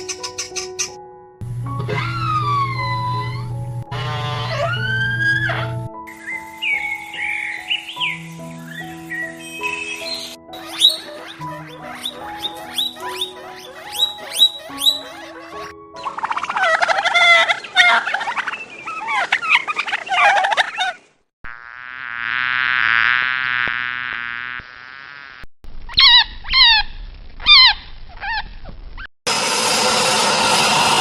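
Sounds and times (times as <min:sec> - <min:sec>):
noisy rasping sound: 0:01.5 - 0:05.9, 0:29.3 - 0:31.0
animal chirping calls: 0:04.2 - 0:21.0
steady buzz: 0:29.3 - 0:31.0.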